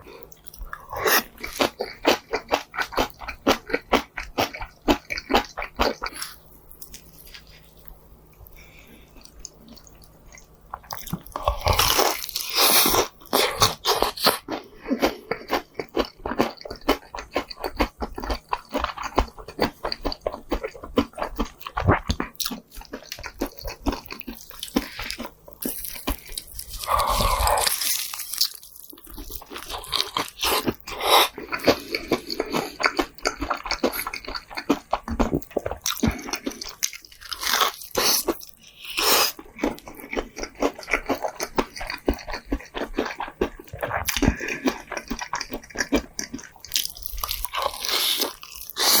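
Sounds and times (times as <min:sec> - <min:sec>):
crunchy bites and chewing: 0:00.2 - 0:08.0, 0:09.2 - 0:49.0.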